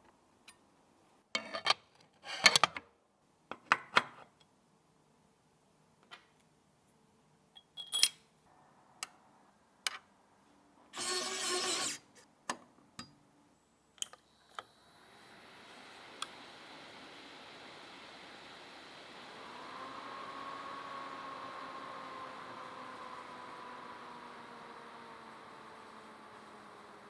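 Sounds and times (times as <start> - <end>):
computer fans whirring: 14.8 - 27.0.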